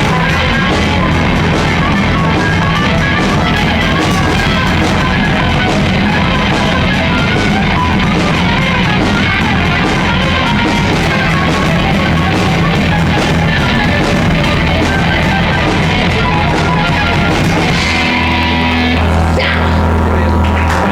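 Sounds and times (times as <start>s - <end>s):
held notes: 0.0s - 0.6s, 3.4s - 5.5s, 11.0s - 15.4s, 16.9s - 20.9s
rock music with electric guitar: 0.0s - 20.9s.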